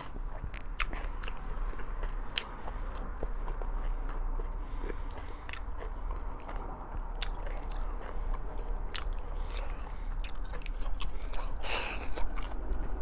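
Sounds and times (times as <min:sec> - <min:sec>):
chewing food: 0:00.0 - 0:13.0
low steady hum: 0:00.0 - 0:13.0.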